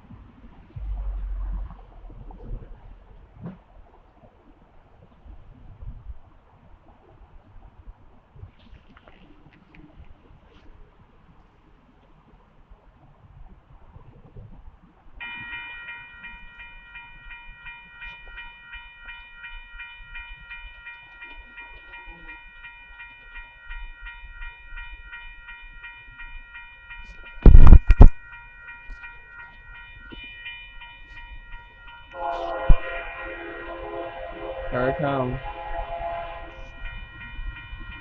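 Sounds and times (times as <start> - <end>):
loud low thump: 0.8 - 3.6
crossing warning bell ringing: 15.2 - 38.0.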